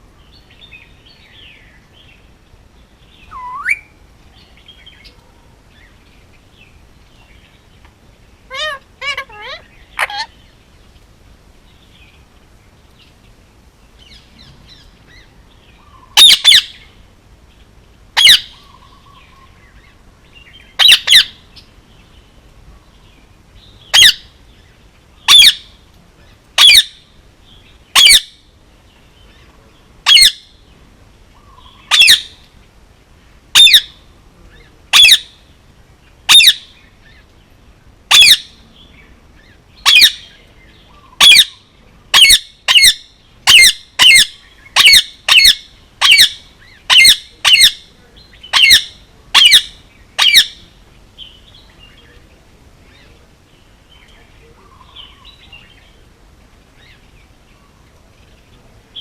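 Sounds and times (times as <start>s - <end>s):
parakeet calling: 3.2s - 3.9s, 8.5s - 10.4s, 15.8s - 16.8s, 18.2s - 19.2s, 20.8s - 21.4s, 23.9s - 24.3s, 25.3s - 25.7s, 26.6s - 27.0s, 27.9s - 28.3s, 30.0s - 30.4s, 31.4s - 32.4s, 33.5s - 34.0s, 34.9s - 35.3s, 36.3s - 36.8s, 38.1s - 38.6s, 39.8s - 40.3s, 40.9s - 50.6s.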